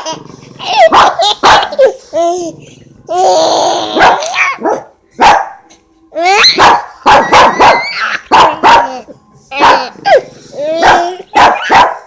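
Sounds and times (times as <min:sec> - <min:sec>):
dog barking: 0:00.8 - 0:01.9, 0:04.0 - 0:05.6, 0:06.5 - 0:09.0, 0:09.6 - 0:10.2, 0:10.8 - 0:12.0.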